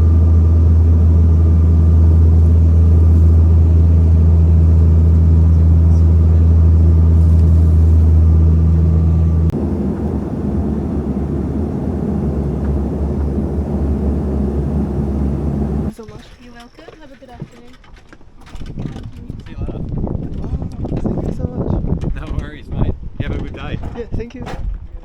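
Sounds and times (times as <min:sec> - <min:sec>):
propeller plane cabin drone: 0:00.0 - 0:15.9.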